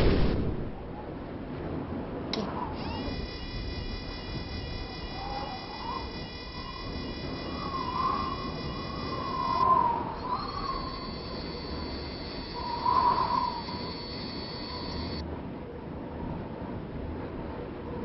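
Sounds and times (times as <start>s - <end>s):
high electronic whine: 2.4s - 15.2s
wavering siren-like tone: 2.4s - 15.2s
single high tone: 2.8s - 15.2s.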